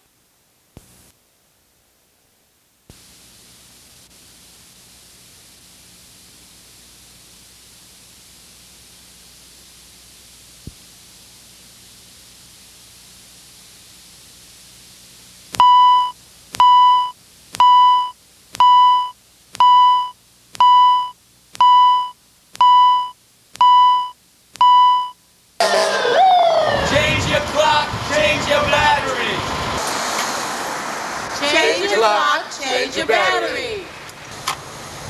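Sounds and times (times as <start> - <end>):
faint hiss: 0.0 - 20.6, 26.8 - 35.0
smoke detector alarm beeping: 15.6 - 25.2.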